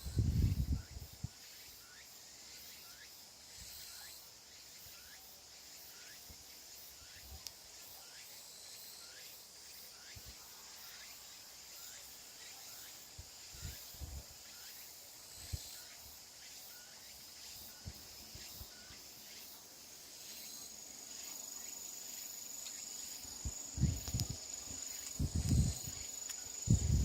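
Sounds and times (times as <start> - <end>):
insects chirping: 0.0 - 27.0.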